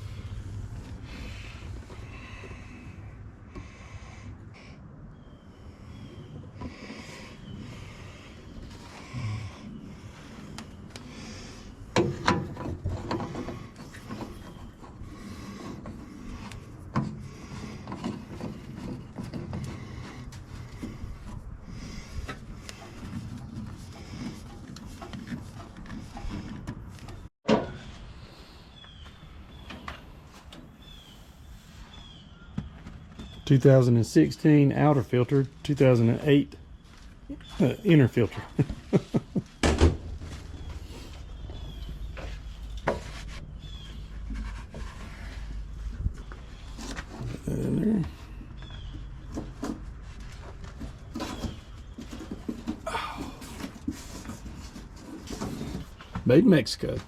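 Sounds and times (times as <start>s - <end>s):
tools and parts clunking: 11.9s - 21.4s.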